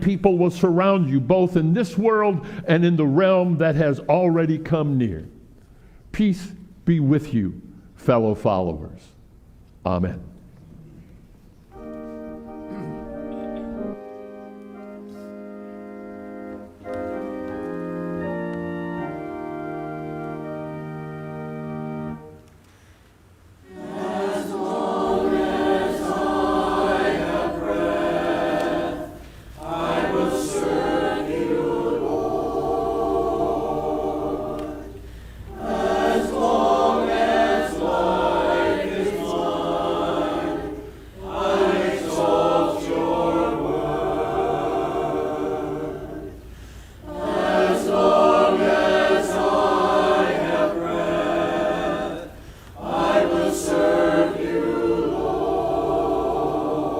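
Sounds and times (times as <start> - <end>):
choir singing: 11.7 - 22.4, 23.6 - 56.9.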